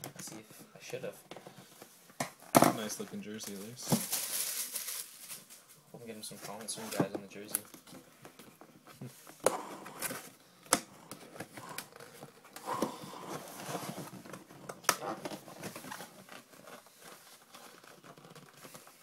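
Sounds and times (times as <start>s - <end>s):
packaging being torn and crinkled: 4.0s - 5.6s.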